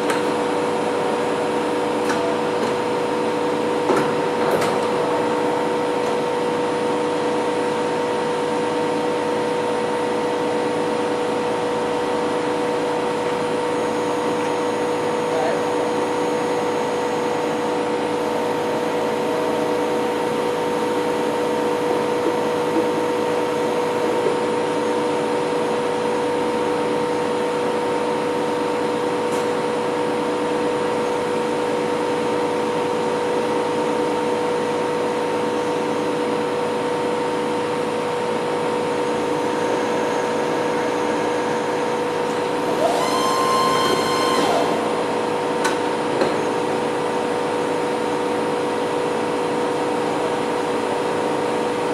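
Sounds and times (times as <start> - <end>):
milling machine humming: 0.0 - 51.9
rising machine whine: 39.4 - 47.9.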